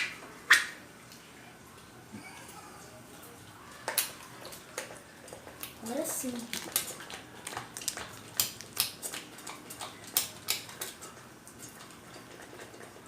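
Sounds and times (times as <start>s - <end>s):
utensils clicking against a bowl: 3.9s - 13.0s.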